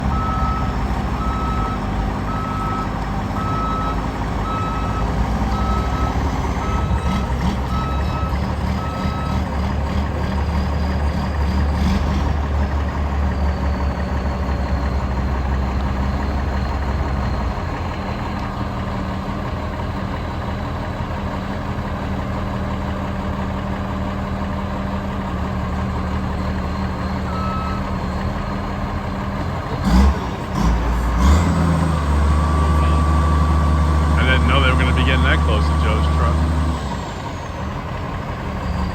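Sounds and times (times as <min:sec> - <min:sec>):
reversing alarm beeping: 0:00.0 - 0:09.5, 0:26.6 - 0:28.5, 0:32.3 - 0:36.6
heavy vehicle engine running: 0:00.0 - 0:38.9.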